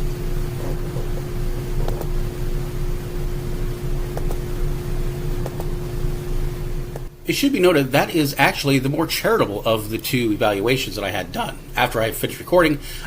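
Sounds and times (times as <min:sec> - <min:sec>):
constant tone: 0:00.0 - 0:12.5
low background hum: 0:00.0 - 0:13.0.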